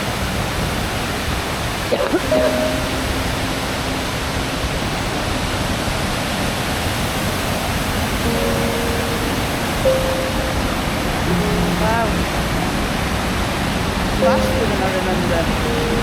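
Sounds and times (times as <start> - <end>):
waterfall rushing over rocks: 0.0 - 16.0.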